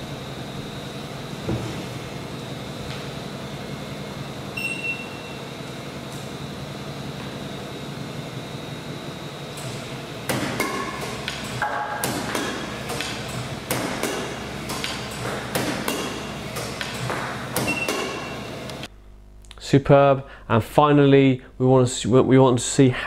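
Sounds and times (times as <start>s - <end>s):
racket strikes with high ping: 10.3s - 18.4s.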